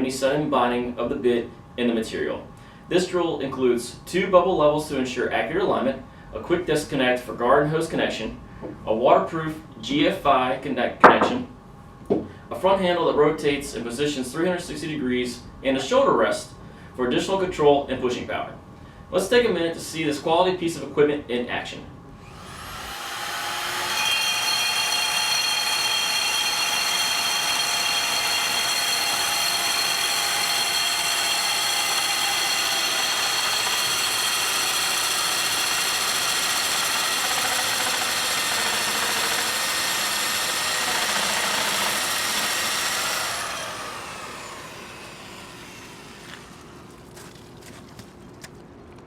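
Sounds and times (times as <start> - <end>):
core drill motor whining: 22.2 - 47.0.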